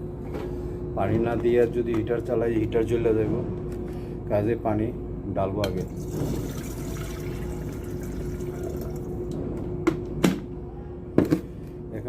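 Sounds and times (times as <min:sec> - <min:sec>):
water pouring into kettle: 0:05.9 - 0:09.2.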